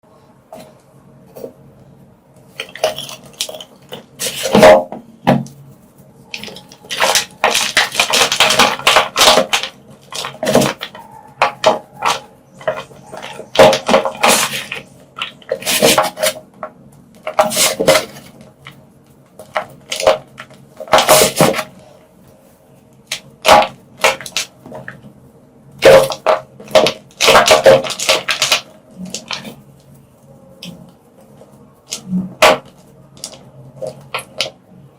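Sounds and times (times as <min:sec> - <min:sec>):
chalk blocks crunching: 0:02.5 - 0:04.8, 0:06.3 - 0:16.4, 0:17.2 - 0:18.4.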